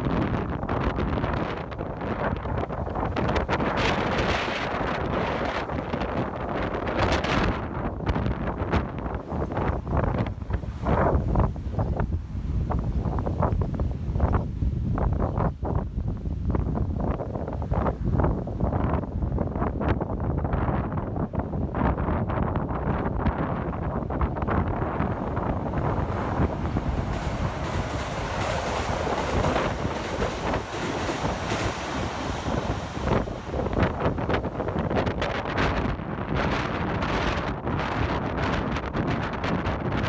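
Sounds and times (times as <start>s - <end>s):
wind buffeting microphone: 0.0s - 40.0s
train rolling past on rails: 8.8s - 12.0s, 24.3s - 35.9s.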